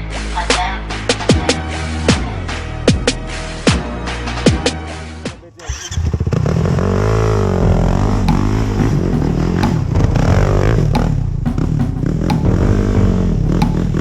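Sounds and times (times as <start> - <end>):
atv engine revving: 5.6 - 14.0
knocks and clatter: 7.6 - 14.0.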